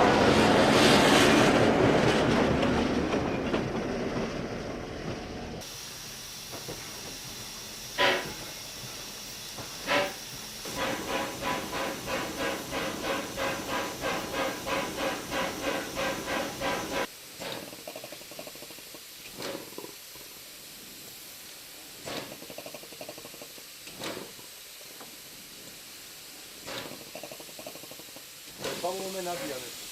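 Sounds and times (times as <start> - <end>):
steam locomotive beats: 0.0 - 17.7
steam hiss: 5.6 - 29.9.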